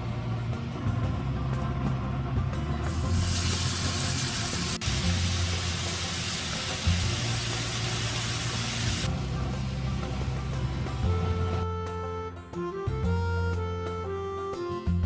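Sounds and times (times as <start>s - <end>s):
background music with bass line: 0.0s - 15.0s
loud steady hiss: 2.8s - 11.6s.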